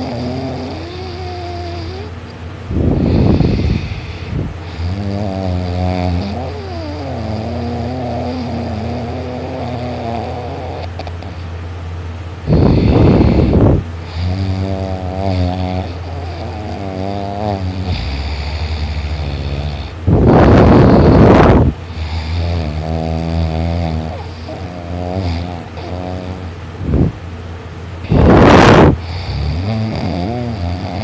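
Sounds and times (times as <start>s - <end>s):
heavy snoring: 0.0s - 11.5s, 12.4s - 26.6s, 28.0s - 31.0s
low hum: 2.2s - 4.8s, 17.8s - 22.0s.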